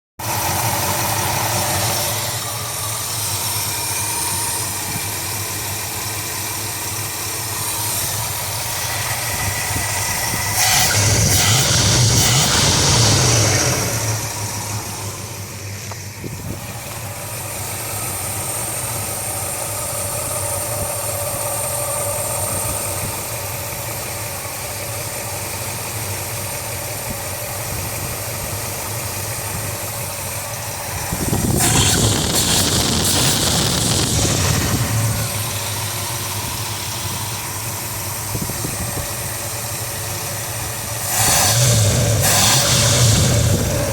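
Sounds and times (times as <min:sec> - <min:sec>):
car engine idling roughly: 0:00.2 - 0:43.9
hiss: 0:31.0 - 0:40.0, 0:40.9 - 0:43.9.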